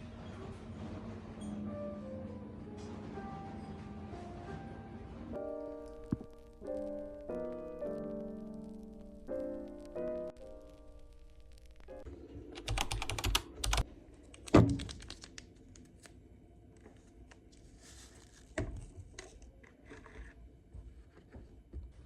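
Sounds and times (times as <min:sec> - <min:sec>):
soft piano music: 0:00.0 - 0:12.1.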